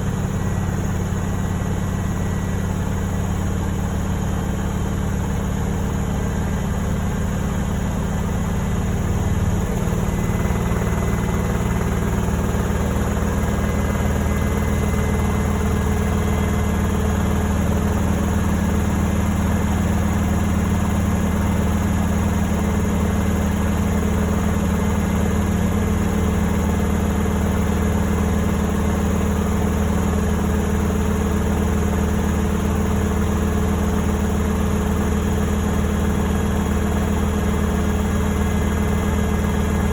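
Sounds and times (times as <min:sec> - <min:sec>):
washing machine humming: 0:00.0 - 0:39.9.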